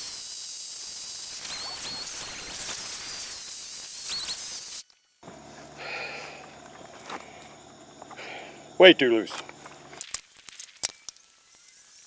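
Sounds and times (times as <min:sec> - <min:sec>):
steady high hiss: 0:00.0 - 0:12.0
chirping whistles: 0:01.3 - 0:03.4, 0:04.0 - 0:04.8.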